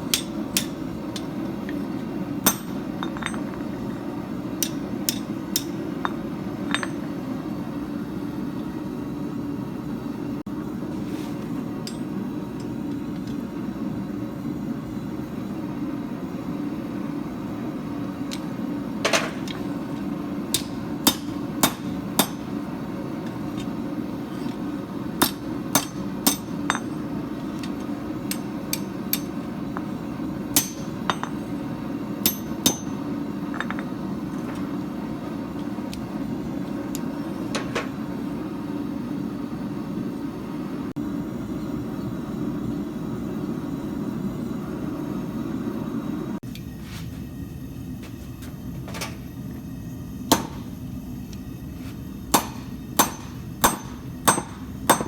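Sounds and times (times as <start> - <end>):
hammer striking steel on anvil: 0.0 - 1.8, 2.4 - 3.7, 4.5 - 7.2, 11.8 - 12.2, 19.1 - 22.7, 23.3 - 31.6, 32.2 - 33.9, 50.3 - 50.7, 52.3 - 55.0.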